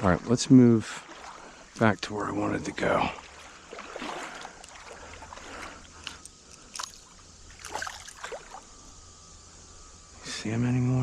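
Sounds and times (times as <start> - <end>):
creek trickling: 0.0 - 9.7
water sloshing around wading legs: 0.6 - 8.8.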